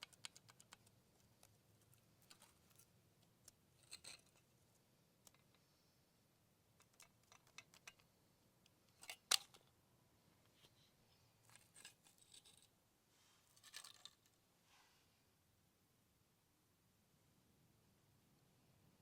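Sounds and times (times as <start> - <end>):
clicking and rattling: 6.8 - 8.1.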